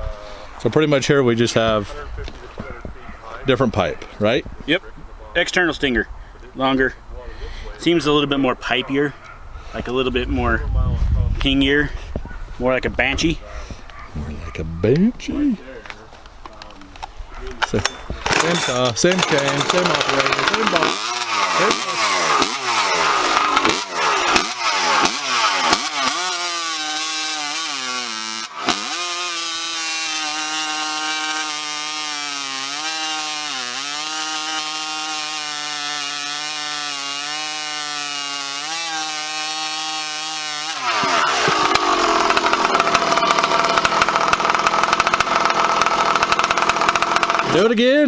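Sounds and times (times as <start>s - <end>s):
chainsaw revving and cutting: 17.8s - 47.7s.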